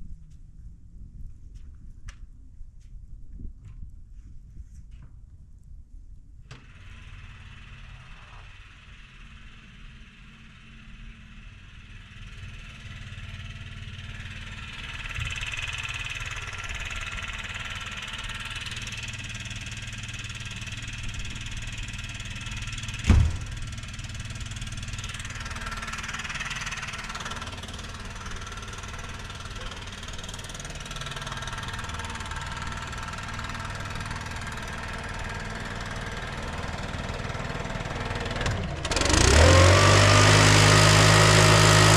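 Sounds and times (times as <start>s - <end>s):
snowblower engine running: 6.5s - 41.9s
sharp knock: 23.0s - 23.6s.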